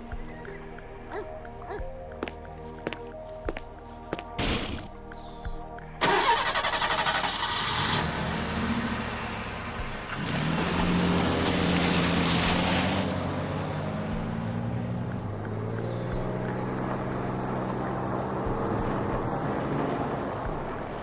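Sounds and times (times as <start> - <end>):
car engine starting and running: 6.0 - 21.0.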